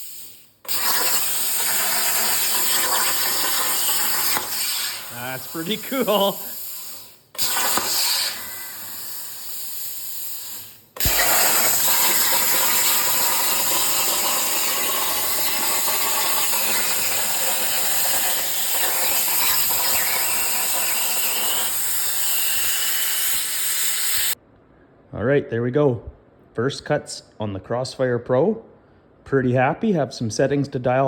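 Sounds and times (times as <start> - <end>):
plasma torch cutting metal hiss: 0.0 - 24.4.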